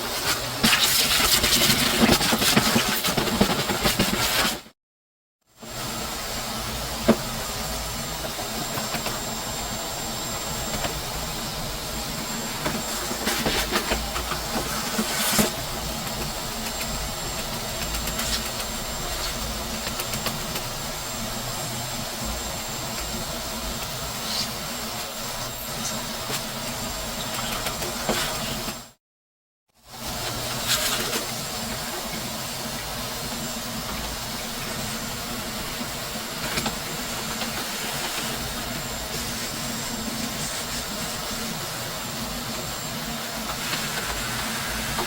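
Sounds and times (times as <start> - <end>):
motor running with air hiss: 30.0 - 45.0.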